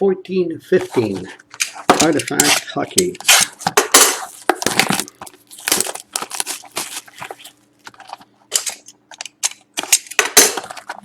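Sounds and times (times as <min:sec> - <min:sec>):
foil packs rustling: 0:04.2 - 0:08.3
plastic wrap crinkling and tearing: 0:04.2 - 0:11.0.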